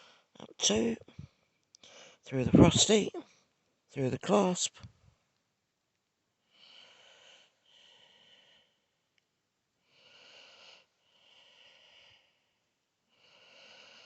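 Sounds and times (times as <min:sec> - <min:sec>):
faint breathing: 0:00.0 - 0:03.3, 0:06.5 - 0:08.9, 0:09.8 - 0:14.0.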